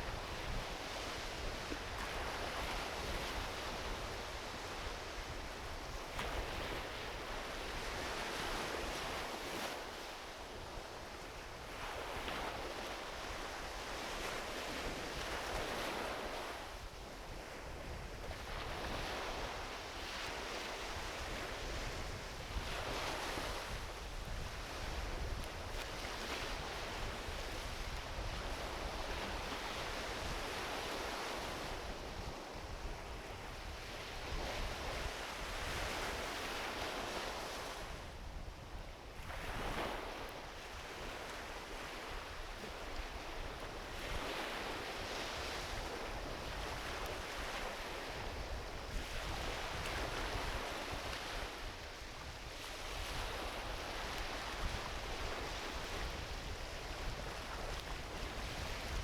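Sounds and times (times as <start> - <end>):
ocean waves washing onto beach: 0.0 - 59.0
wind on microphone: 0.0 - 59.0.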